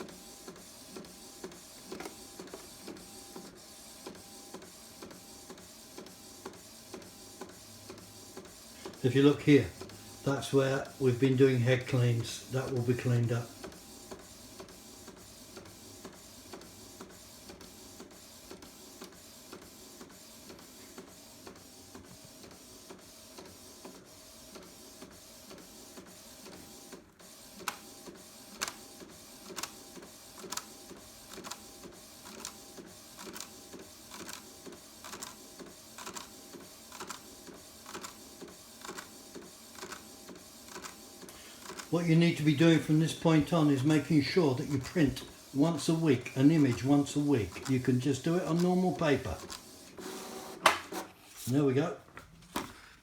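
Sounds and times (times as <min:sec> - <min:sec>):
inkjet printer whirring: 0:00.0 - 0:51.4
printer carriage clicks: 0:50.6 - 0:51.1.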